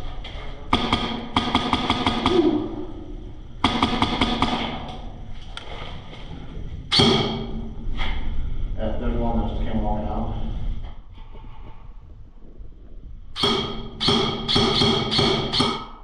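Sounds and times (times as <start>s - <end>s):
airsoft rifle shots: 0.7s - 2.6s, 3.6s - 4.8s, 6.9s - 7.5s, 13.4s - 16.0s.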